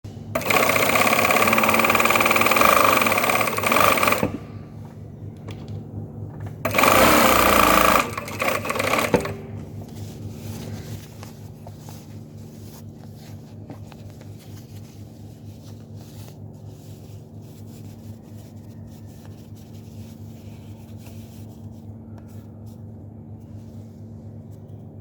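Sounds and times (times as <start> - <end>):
sewing machine stitching: 0.3 - 4.6, 6.6 - 9.6
sewing machine clicks: 0.4 - 4.6, 6.7 - 9.6.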